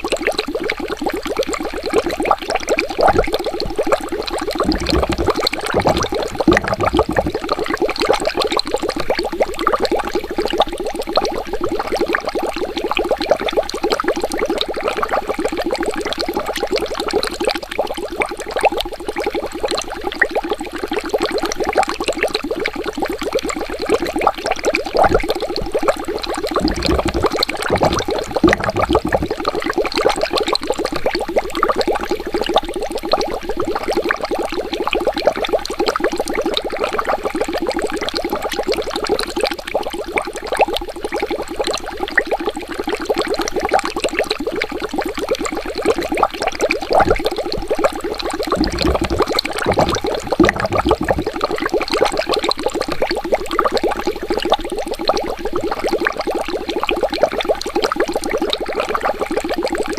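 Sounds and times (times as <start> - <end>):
water bubbling: 0.2 - 13.5, 24.6 - 34.3, 45.4 - 56.3
deep low rumble: 4.7 - 7.4, 26.6 - 29.4, 48.6 - 51.4.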